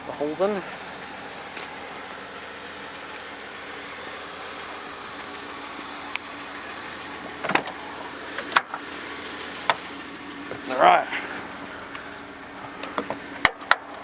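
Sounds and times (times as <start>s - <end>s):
car engine idling: 0.0s - 14.0s
sharp clicks and knocks: 7.2s - 8.8s, 12.8s - 14.0s.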